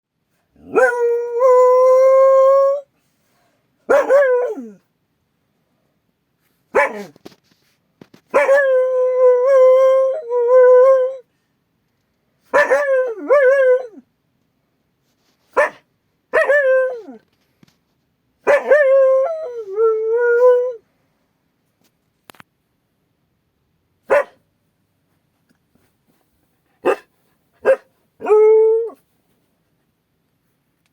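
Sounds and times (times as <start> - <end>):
dog howling and baying: 0.6 - 2.9, 3.9 - 4.8, 8.3 - 11.2, 12.5 - 14.0, 16.4 - 17.2, 18.5 - 20.8, 27.6 - 29.0.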